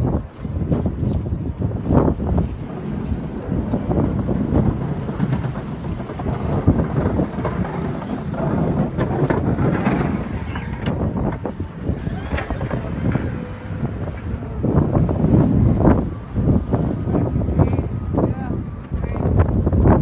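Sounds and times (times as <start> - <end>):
vehicle engine rumbling: 0.0 - 20.0
wind buffeting microphone: 0.0 - 20.0
knocks and clatters: 4.1 - 16.1.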